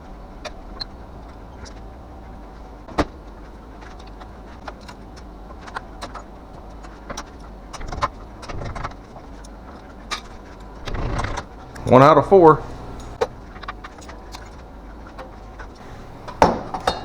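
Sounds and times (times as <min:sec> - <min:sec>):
hand tools clicking and tapping metal: 0:08.7 - 0:17.0.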